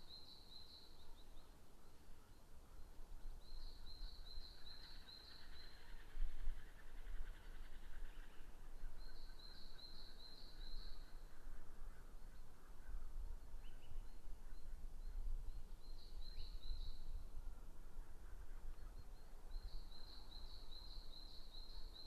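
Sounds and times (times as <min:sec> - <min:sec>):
wind rumble on microphone: 0:05.5 - 0:09.1, 0:10.9 - 0:20.0.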